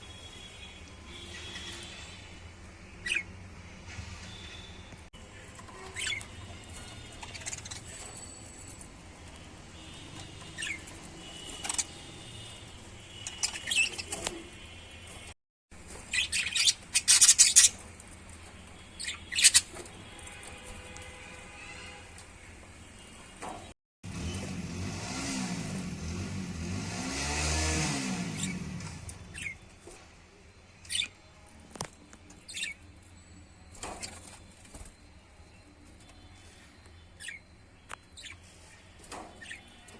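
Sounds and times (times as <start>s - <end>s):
lovebirds chirping: 18.9s - 19.8s, 29.2s - 29.7s, 33.8s - 39.9s.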